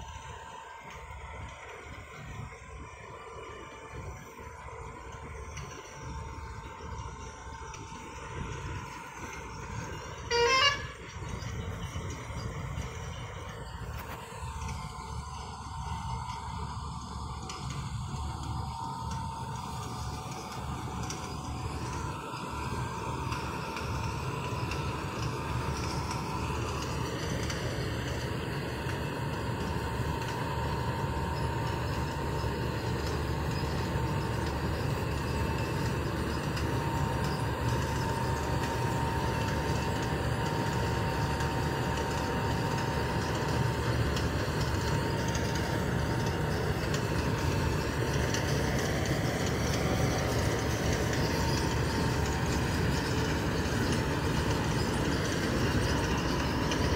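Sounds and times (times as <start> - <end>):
combine harvester rumbling: 0.0 - 56.9
thin mechanical whine: 0.0 - 56.9.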